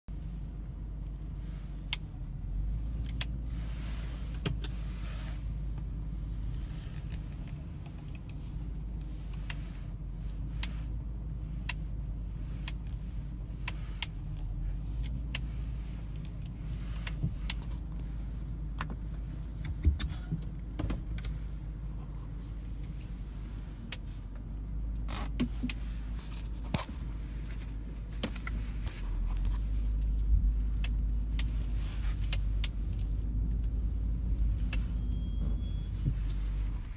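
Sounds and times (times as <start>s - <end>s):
car engine running: 0.1s - 36.9s.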